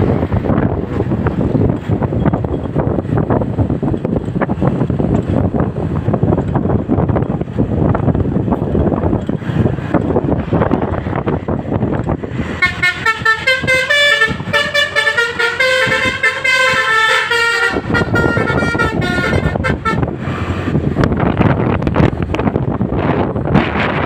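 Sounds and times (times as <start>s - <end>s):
vehicle rumble: 0.0s - 24.0s
wind buffeting microphone: 0.0s - 24.0s
musical air horn tune: 12.5s - 20.1s.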